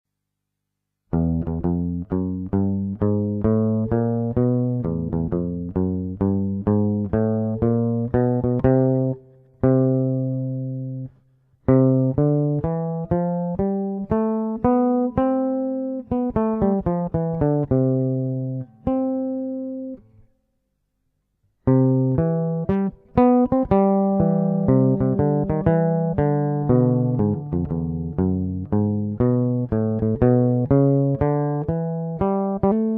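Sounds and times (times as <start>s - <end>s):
bass ukulele plucked notes: 1.1s - 20.0s, 21.6s - 32.9s.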